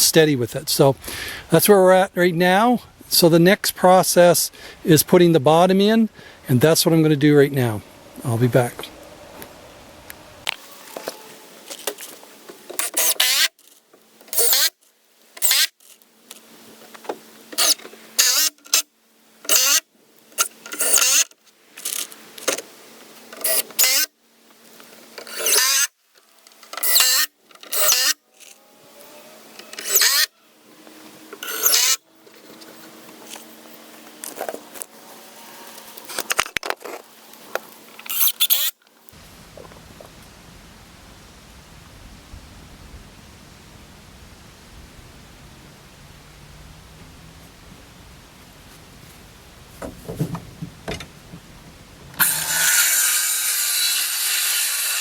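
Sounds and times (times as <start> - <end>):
power drill driving screws into wood: 12.8 - 13.7, 14.3 - 14.8, 15.4 - 15.9, 17.6 - 18.8, 19.5 - 19.8, 20.4 - 22.1, 23.4 - 24.1, 25.2 - 25.9, 26.7 - 28.2, 29.6 - 30.3, 31.4 - 32.0, 52.2 - 55.0.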